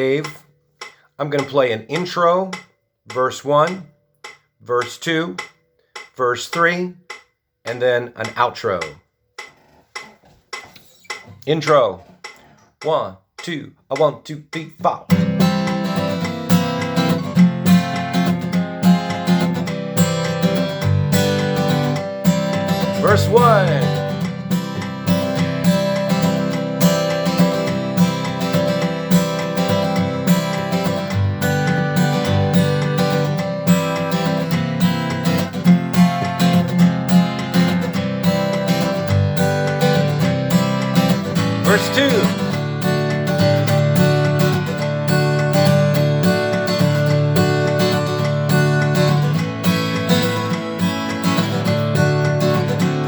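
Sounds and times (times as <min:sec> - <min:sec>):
guitar strumming chords: 0:14.8 - 0:53.0.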